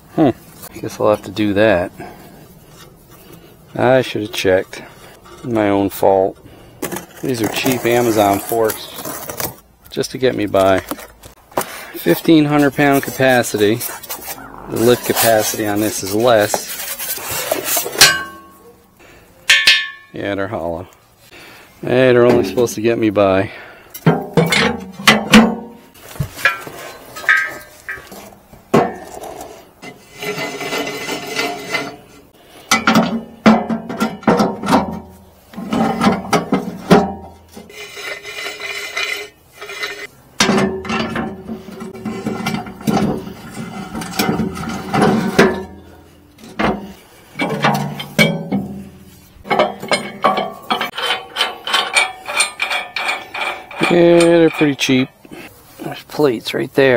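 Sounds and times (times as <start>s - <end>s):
metal rubbing and scraping: 0.4s - 9.6s, 10.6s - 18.7s, 24.1s - 56.1s
metallic knocks with ringing: 19.5s - 20.1s.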